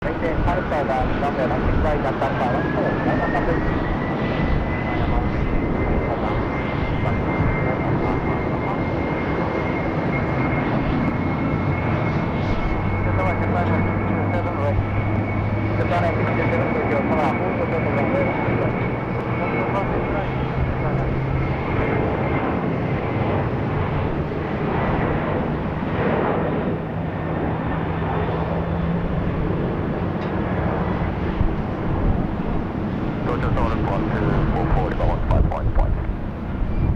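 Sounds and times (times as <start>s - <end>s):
jet engines roaring with whine: 0.0s - 36.9s.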